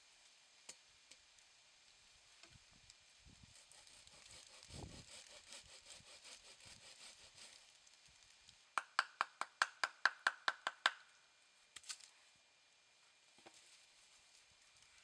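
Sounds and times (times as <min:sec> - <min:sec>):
hand saw cutting wood: 0:03.5 - 0:07.8.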